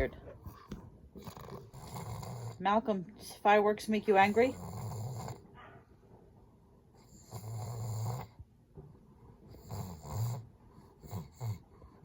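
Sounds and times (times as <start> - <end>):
dog growling: 0.5 - 2.6, 4.2 - 5.6, 7.1 - 8.4, 9.5 - 11.8.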